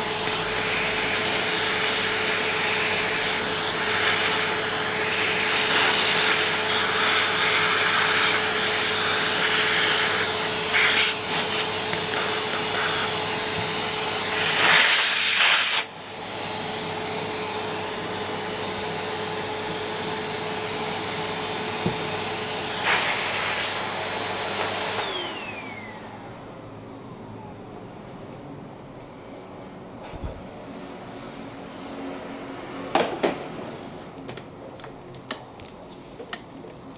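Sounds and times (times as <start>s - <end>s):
vacuum cleaner motor whine: 0.0s - 27.6s.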